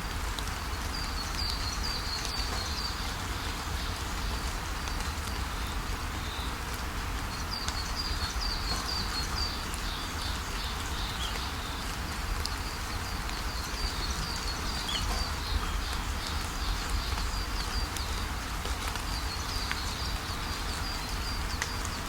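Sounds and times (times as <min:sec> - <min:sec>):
small birds chirping: 0:07.3 - 0:22.0.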